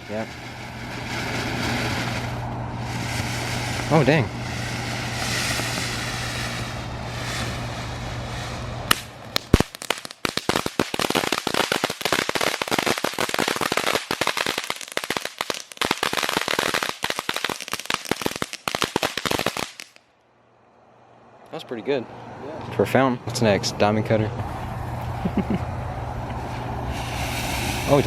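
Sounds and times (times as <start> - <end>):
firework fast crackling: 0.0 - 20.0, 26.4 - 28.0
firework fountain hissing: 0.0 - 20.0, 26.4 - 28.0.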